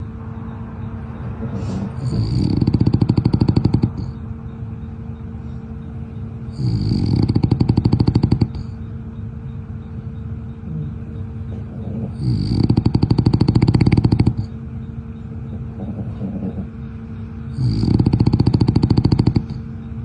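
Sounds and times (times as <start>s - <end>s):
dog snoring: 1.4s - 4.2s, 6.4s - 8.8s, 10.6s - 14.6s, 15.5s - 19.7s.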